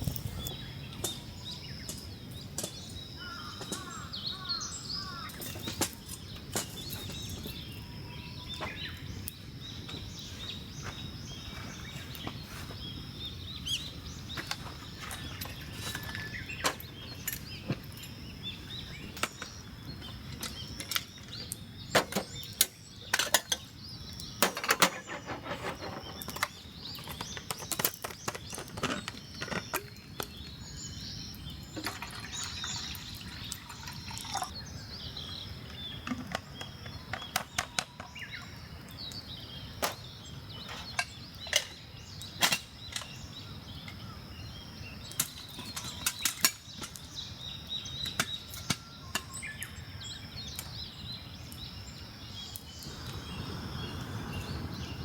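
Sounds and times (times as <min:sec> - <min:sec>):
campfire crackling and popping: 0:26.2 - 0:35.8, 0:41.1 - 0:55.0
low hiss of fire: 0:34.7 - 0:55.0.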